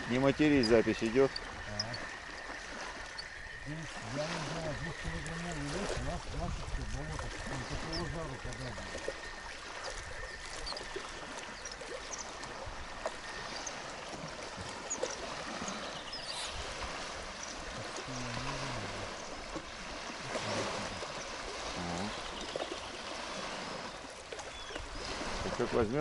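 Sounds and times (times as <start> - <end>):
water lapping at shore: 0.0 - 26.0
wind: 0.0 - 26.0.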